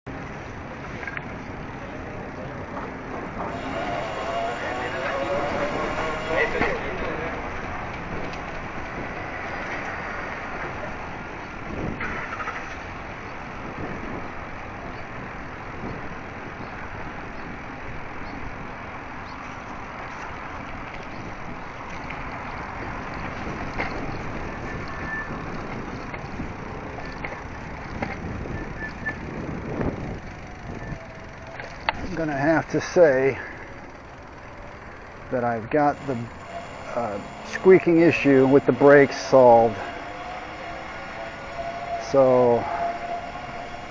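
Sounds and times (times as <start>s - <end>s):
bicycle road noise: 0.1s - 43.9s
wind rush: 36.0s - 43.9s.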